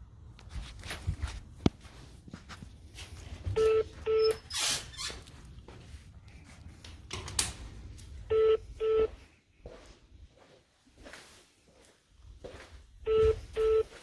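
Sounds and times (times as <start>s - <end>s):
telephone double beep: 3.6s - 4.5s, 8.3s - 9.1s, 13.1s - 13.9s.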